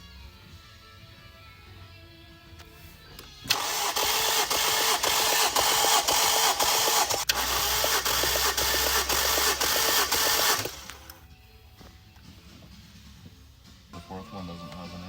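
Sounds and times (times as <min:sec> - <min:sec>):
faint music: 0:00.0 - 0:04.4, 0:07.3 - 0:15.0
car engine cranking on starter: 0:03.3 - 0:11.2.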